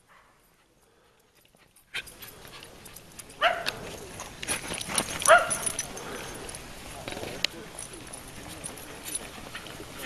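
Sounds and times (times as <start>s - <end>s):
dog barking: 3.4s - 3.8s, 5.2s - 5.7s.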